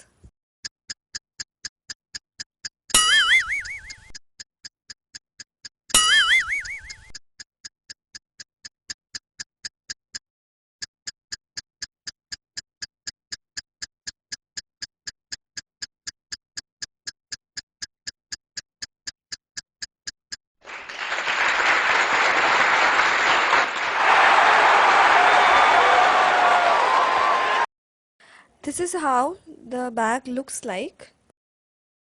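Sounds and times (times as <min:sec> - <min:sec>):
clock ticking: 0:00.6 - 0:10.2, 0:10.8 - 0:20.4
applause: 0:20.6 - 0:27.7.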